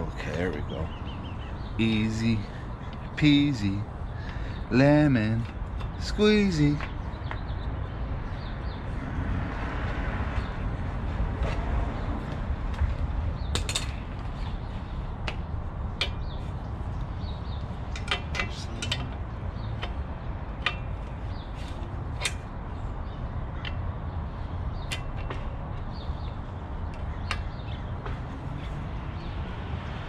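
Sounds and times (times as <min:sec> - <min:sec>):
metal tools clicking and clinking: 0:13.6 - 0:14.1, 0:17.9 - 0:20.0.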